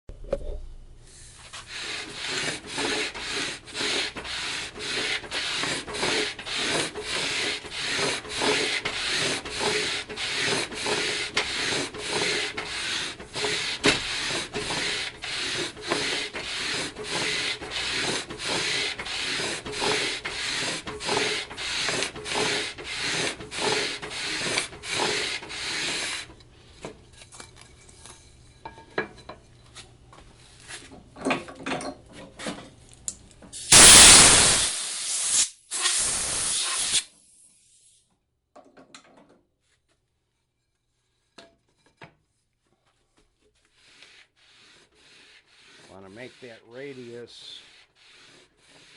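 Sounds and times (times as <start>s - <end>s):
sandpaper rubbing on wood: 1.4s - 26.3s, 43.6s - 48.9s.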